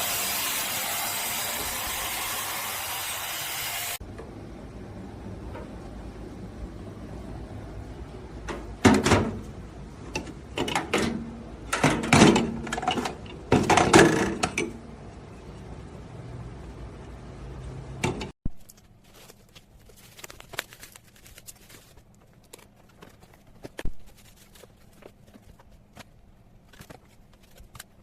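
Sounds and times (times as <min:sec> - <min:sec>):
hard objects knocking and clattering: 0:10.1 - 0:14.8.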